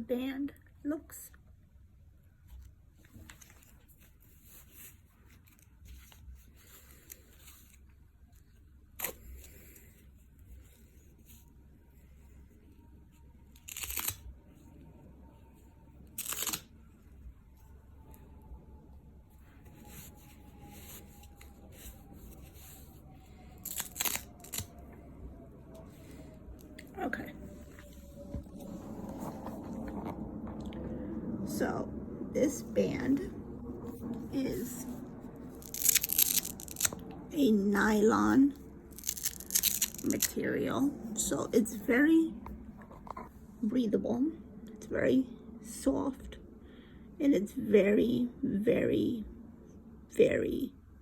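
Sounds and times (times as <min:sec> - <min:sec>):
rustling nylon watch band: 0:03.0 - 0:18.4, 0:19.3 - 0:30.0, 0:34.5 - 0:40.4.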